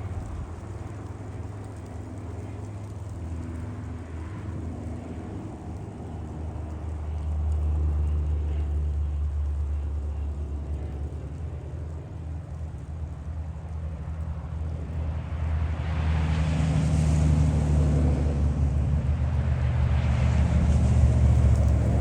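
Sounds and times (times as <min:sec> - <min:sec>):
diesel train engine rumbling: 0:17.5 - 0:22.0.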